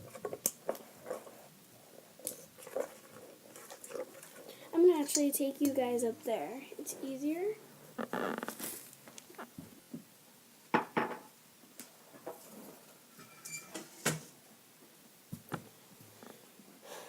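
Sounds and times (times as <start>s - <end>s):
objects knocking and clattering: 10.7s - 11.4s.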